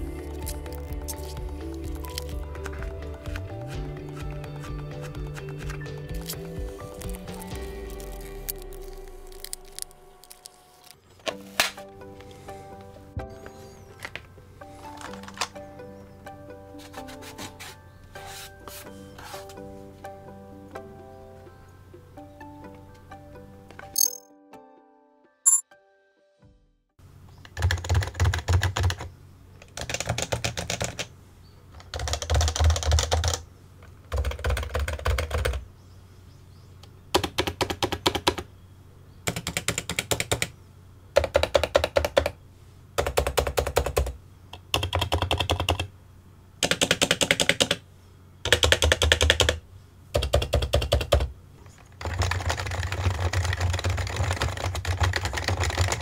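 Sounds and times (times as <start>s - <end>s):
keyboard keys clacking: 12.7s - 17.2s, 52.0s - 56.0s.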